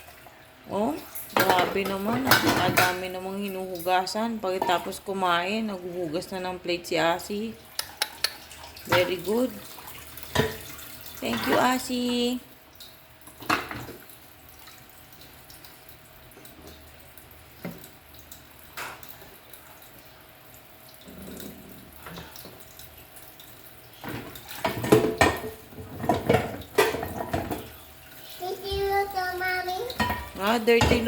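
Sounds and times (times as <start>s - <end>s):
dishes clattering: 1.4s - 3.2s, 4.6s - 5.0s, 10.3s - 11.8s, 13.4s - 14.0s, 24.0s - 27.8s, 29.9s - 31.0s
tap water running into sink: 7.3s - 31.0s
plates knocking: 24.1s - 27.7s, 30.0s - 31.0s.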